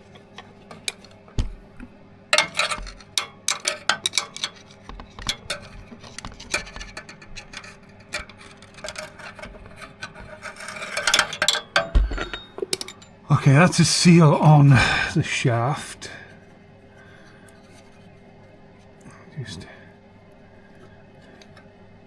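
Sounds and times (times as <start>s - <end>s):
small parts clicking and tapping: 2.3s - 13.1s.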